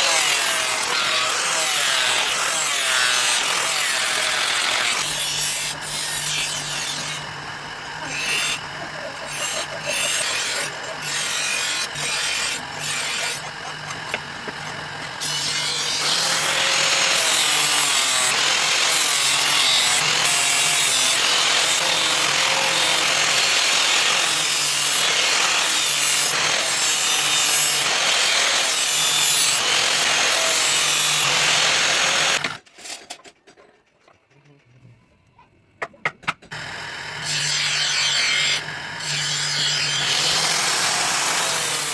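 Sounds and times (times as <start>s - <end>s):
power grinder sharpening knife: 0.0s - 32.6s, 36.5s - 41.9s.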